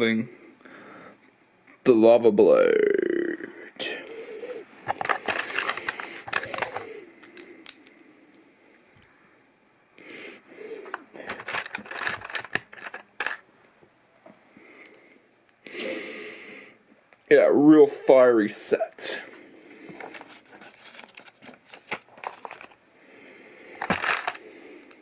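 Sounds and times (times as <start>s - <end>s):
plastic pieces rustling: 4.8s - 7.8s, 11.2s - 13.4s, 20.0s - 22.8s, 23.8s - 24.4s.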